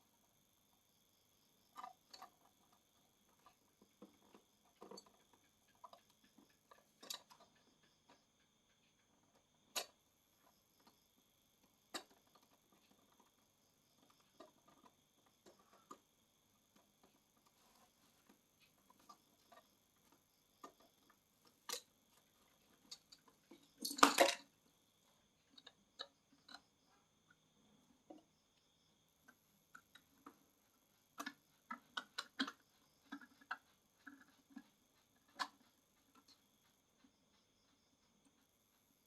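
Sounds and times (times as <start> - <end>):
plastic clatter: 16.7 - 24.6.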